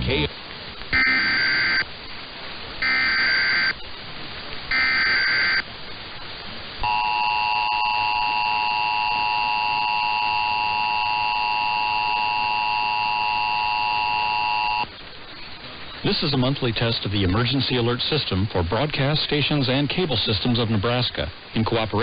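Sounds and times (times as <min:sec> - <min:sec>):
radio hiss: 0:00.0 - 0:22.0
two-tone attention signal: 0:01.0 - 0:01.8, 0:02.8 - 0:03.7, 0:04.7 - 0:05.6, 0:06.8 - 0:14.8
warbling data screech: 0:01.0 - 0:01.8, 0:02.8 - 0:03.8, 0:04.7 - 0:05.6, 0:06.8 - 0:14.9.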